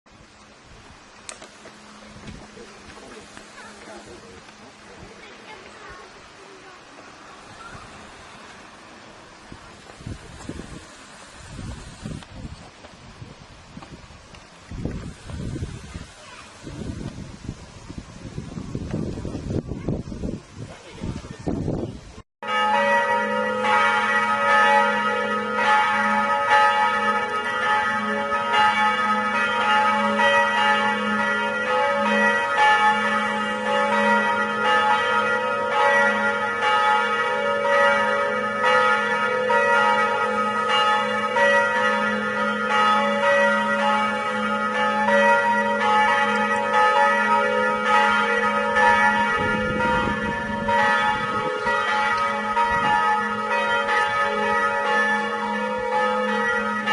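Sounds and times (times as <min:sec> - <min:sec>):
church bells pealing: 0:22.4 - 0:56.9.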